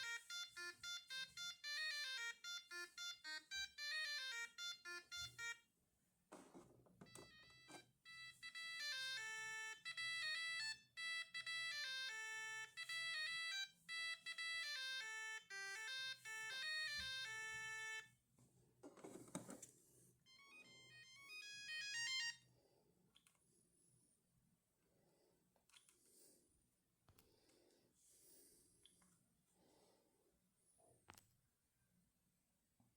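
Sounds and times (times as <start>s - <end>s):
electronic beeping ringtone melody: 0.0s - 5.6s, 7.0s - 18.1s, 20.3s - 22.4s
phone clicks: 6.3s - 7.9s.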